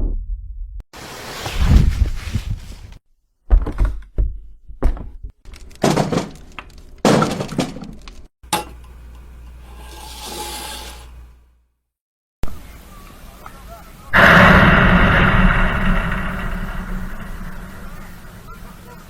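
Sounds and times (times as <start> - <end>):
rush of noise: 14.1 - 19.0
crash of something breaking: 14.2 - 19.0
heavy impact thuds: 14.2 - 19.0.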